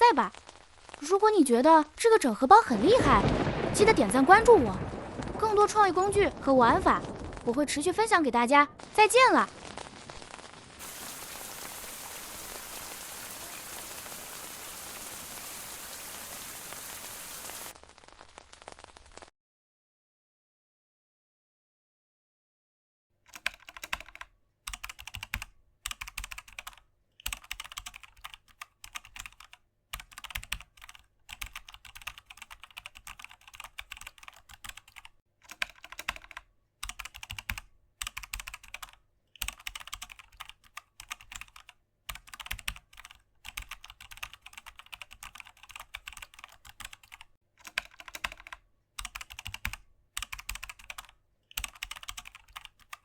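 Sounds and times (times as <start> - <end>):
typing on computer keyboard: 23.3 - 53.0.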